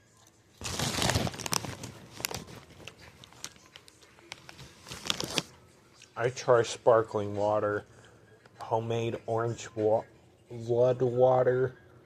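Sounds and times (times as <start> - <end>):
small crackles and rustles: 0.1 - 6.2
popcorn bag crinkling: 0.6 - 5.6.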